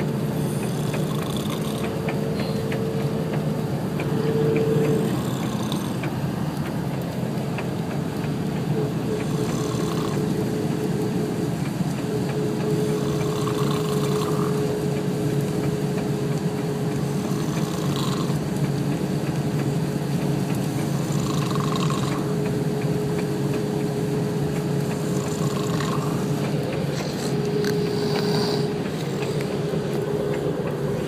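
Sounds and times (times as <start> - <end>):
car driving drone: 0.0 - 31.0
person snoring: 0.4 - 1.8, 5.0 - 6.0, 25.1 - 26.3, 26.9 - 29.5.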